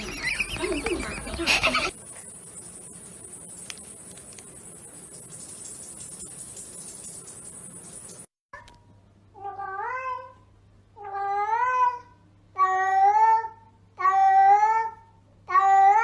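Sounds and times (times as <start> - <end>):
steady hiss: 0.6 - 8.3.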